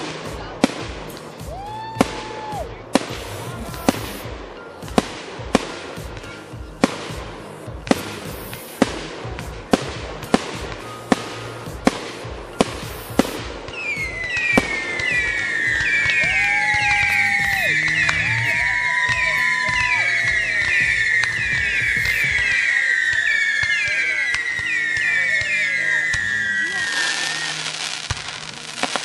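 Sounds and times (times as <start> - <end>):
fireworks exploding: 0.0 - 29.0
music playing: 0.0 - 29.0
shrill falling whistles: 13.7 - 27.7.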